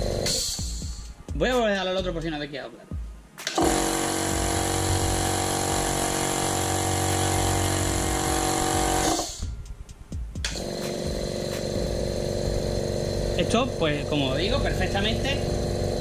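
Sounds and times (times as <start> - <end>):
loud air compressor running: 0.0 - 1.0, 3.5 - 9.4, 10.5 - 16.0
quiet compressor humming: 0.0 - 16.0.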